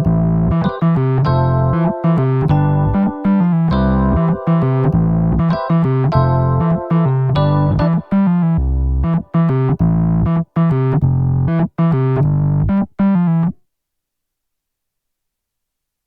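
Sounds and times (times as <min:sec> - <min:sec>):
piano chords in steady rhythm: 0:00.0 - 0:12.0.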